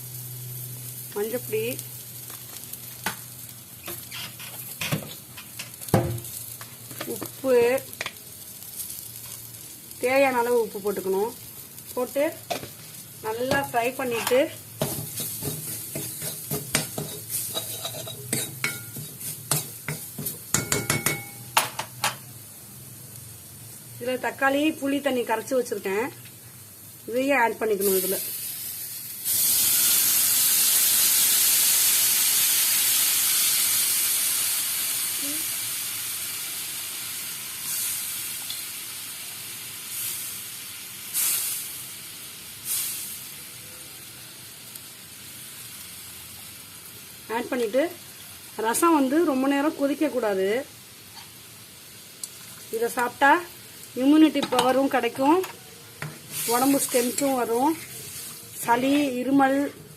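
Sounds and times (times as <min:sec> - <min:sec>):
faint frying sizzle: 0:00.0 - 0:59.9
spoon scraping a pan: 0:03.8 - 0:05.2, 0:13.4 - 0:21.5, 0:56.0 - 0:58.0.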